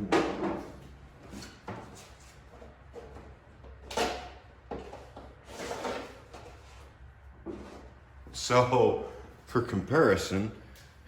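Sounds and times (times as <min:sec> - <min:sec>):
air filter rustling and scraping: 0:00.6 - 0:08.0.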